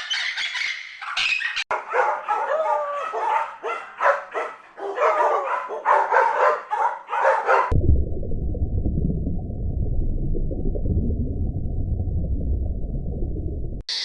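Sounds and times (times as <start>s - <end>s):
high squawking calls: 0.0s - 1.7s.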